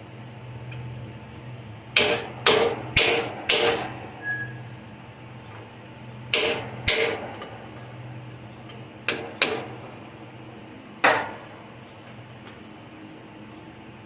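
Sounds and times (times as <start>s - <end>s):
sharp metal clanks: 2.0s - 4.0s, 6.3s - 7.6s.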